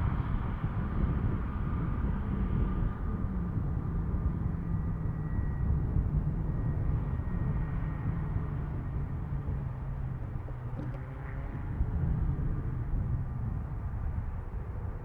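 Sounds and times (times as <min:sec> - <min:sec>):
faint high engine whine: 0:00.0 - 0:15.0.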